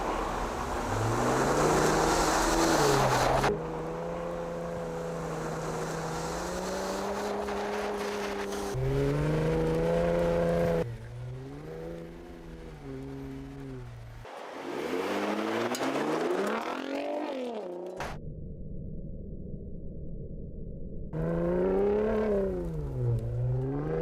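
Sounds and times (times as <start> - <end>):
truck engine revving: 0.0 - 17.9.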